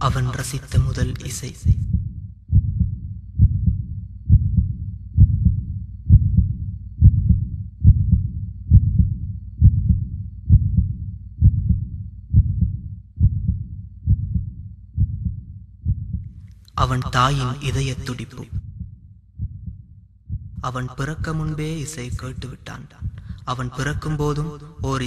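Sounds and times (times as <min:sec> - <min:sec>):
muffled heartbeat thumps: 0:01.6 - 0:16.4, 0:18.5 - 0:21.6, 0:22.2 - 0:23.4, 0:24.8 - 0:25.0.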